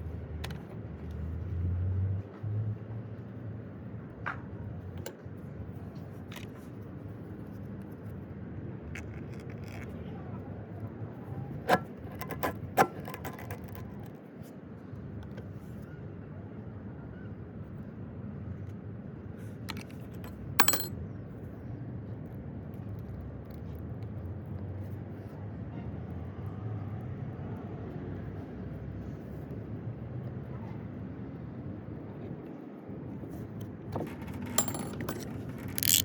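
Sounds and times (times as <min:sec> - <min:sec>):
metal hand tools clinking: 0:20.2 - 0:20.9, 0:34.1 - 0:36.0.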